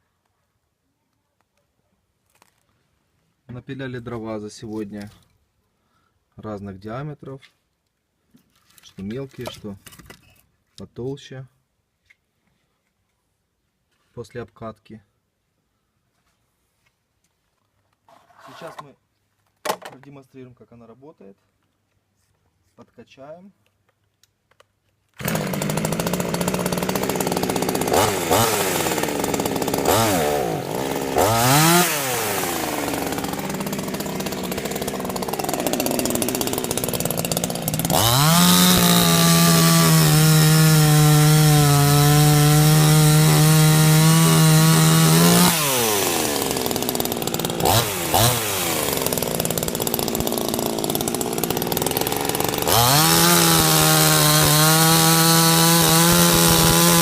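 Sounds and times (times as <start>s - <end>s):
chainsaw idling and revving: 25.2s - 57.0s.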